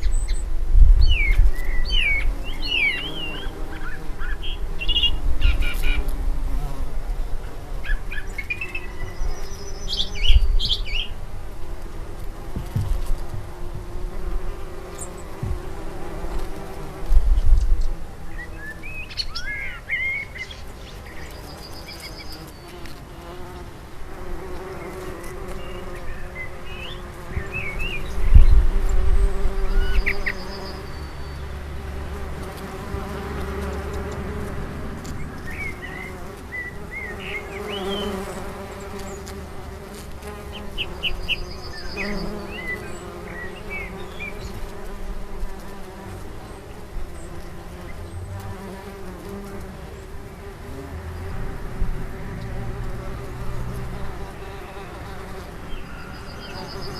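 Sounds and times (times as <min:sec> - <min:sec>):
birds chirping: 0:00.0 - 0:06.1, 0:07.8 - 0:11.2, 0:17.5 - 0:23.5, 0:24.6 - 0:32.5, 0:35.0 - 0:39.4, 0:40.2 - 0:44.9, 0:46.4 - 0:56.9
flying insect buzzing: 0:00.0 - 0:56.9.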